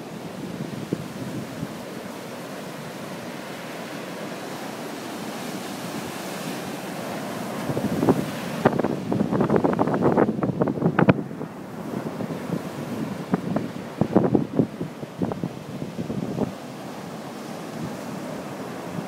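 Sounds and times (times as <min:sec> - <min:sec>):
rough surf breaking: 0:00.0 - 0:19.0
wind buffeting microphone: 0:07.5 - 0:16.7.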